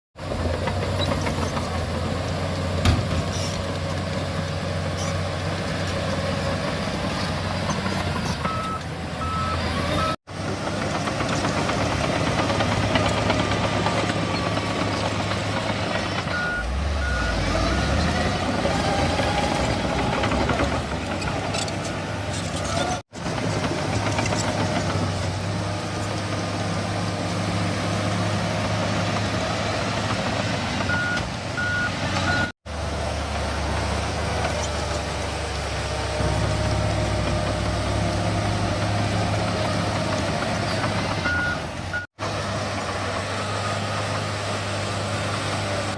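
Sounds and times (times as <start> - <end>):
bulldozer diesel engine running: 0.2 - 45.9
reversing alarm beeping: 8.4 - 10.2, 16.3 - 18.0, 30.9 - 32.5.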